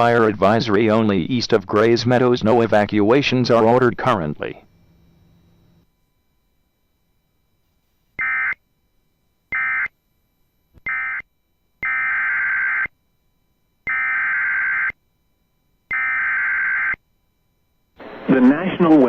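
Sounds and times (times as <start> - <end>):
buzzy digital data bursts: 8.2 - 8.6, 9.5 - 9.9, 10.8 - 12.9, 13.9 - 15.0, 15.9 - 17.0.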